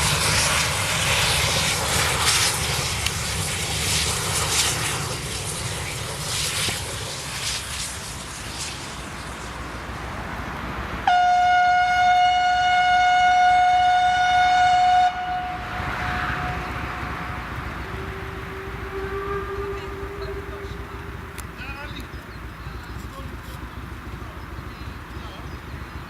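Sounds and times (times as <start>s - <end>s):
rushing noise of running train: 0.0s - 26.0s
steam locomotive whistle: 11.0s - 21.2s.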